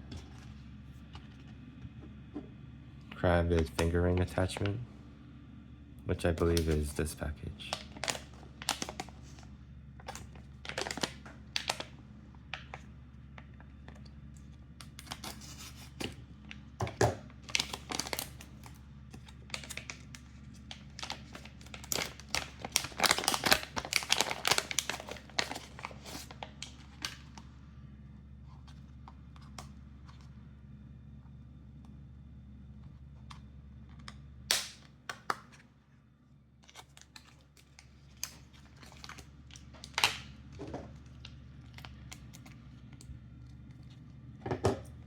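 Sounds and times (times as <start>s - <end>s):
packaging rustling and crackling: 7.6s - 14.0s, 14.8s - 27.5s, 36.6s - 44.1s.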